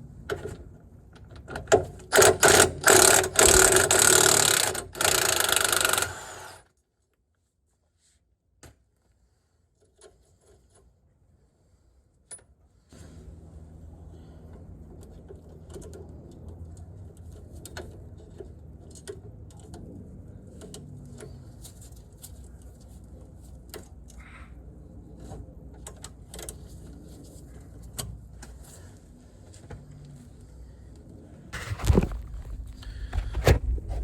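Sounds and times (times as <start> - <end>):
steady low hum: 30.3 - 34.0.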